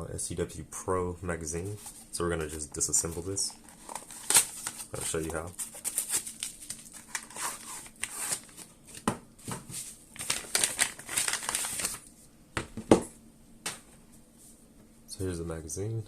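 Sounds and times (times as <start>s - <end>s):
packaging rustling and crinkling: 1.6s - 12.1s.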